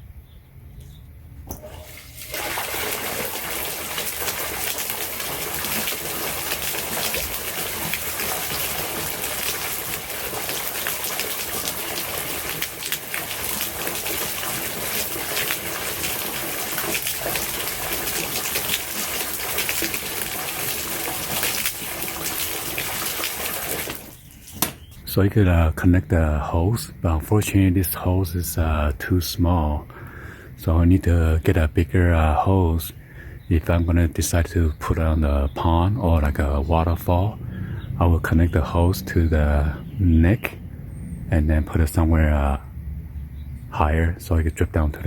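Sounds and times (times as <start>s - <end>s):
water gushing into tank: 1.5s - 24.5s
pond pump running: 1.5s - 24.7s.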